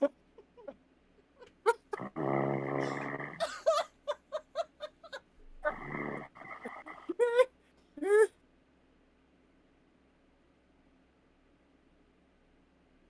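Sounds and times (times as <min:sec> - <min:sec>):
dog snoring: 0:02.0 - 0:03.5, 0:05.6 - 0:07.2
dog whimpering: 0:02.8 - 0:08.3.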